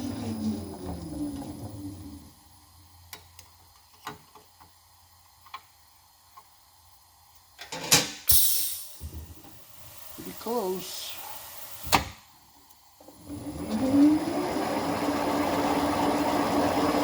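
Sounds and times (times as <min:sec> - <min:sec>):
power tool motor winding down: 0:13.2 - 0:17.0.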